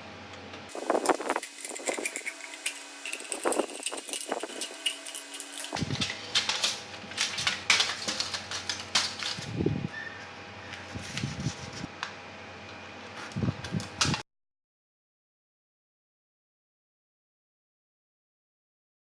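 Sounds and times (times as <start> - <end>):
small parts clicking and knocking: 0.7 - 9.5.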